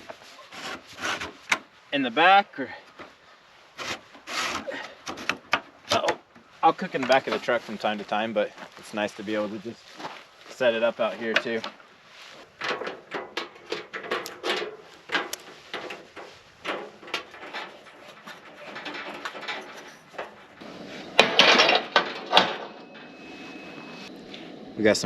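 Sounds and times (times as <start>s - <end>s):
camp cooking gear clattering: 4.1s - 9.6s, 10.5s - 23.1s.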